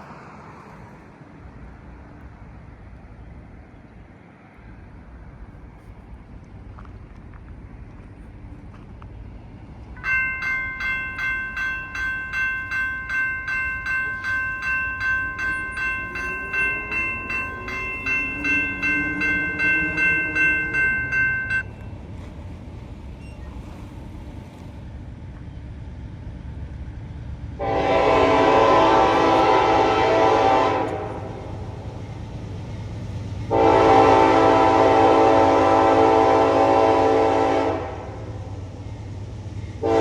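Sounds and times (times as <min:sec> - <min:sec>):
railroad crossing bell ringing: 0:10.0 - 0:21.9, 0:27.6 - 0:31.9, 0:33.5 - 0:38.2
locomotive air horn: 0:27.6 - 0:31.6, 0:33.5 - 0:38.4, 0:39.8 - 0:40.0.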